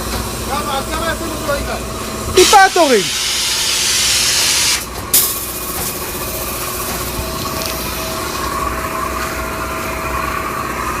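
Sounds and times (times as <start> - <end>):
spray gun hissing: 2.4 - 6.9.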